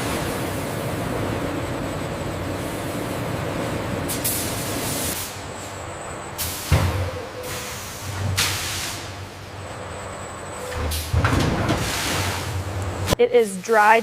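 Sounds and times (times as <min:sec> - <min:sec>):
machinery hum: 0:00.0 - 0:14.0.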